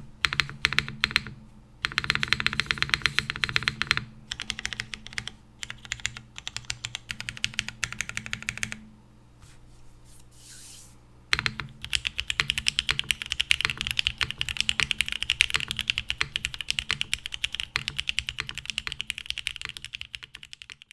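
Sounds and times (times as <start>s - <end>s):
mechanical keyboard typing: 0.2s - 8.8s, 11.3s - 20.9s.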